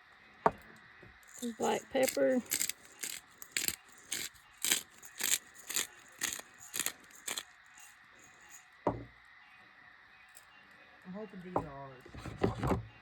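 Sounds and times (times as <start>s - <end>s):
pepper shaker rattling: 1.2s - 8.7s.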